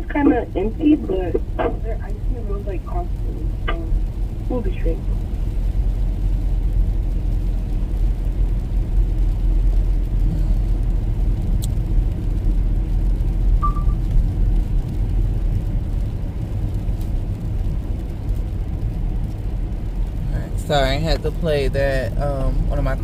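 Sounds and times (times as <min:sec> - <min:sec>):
car engine and road noise: 0:00.0 - 0:23.0
short high beep: 0:13.6 - 0:14.0.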